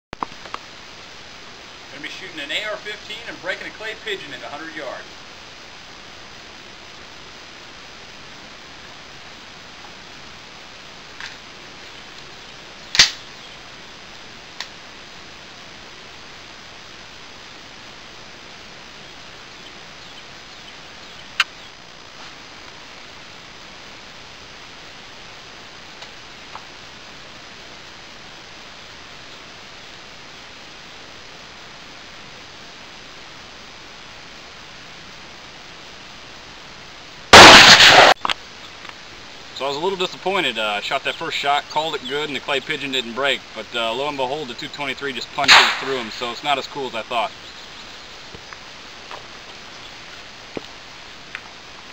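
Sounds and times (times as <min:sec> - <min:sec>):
steady hiss: 0:00.2 - 0:51.9
faint sharp crack: 0:12.9 - 0:13.3, 0:37.4 - 0:38.4, 0:45.4 - 0:46.2
rifle shot: 0:12.9 - 0:13.3, 0:37.3 - 0:38.2, 0:45.4 - 0:46.3.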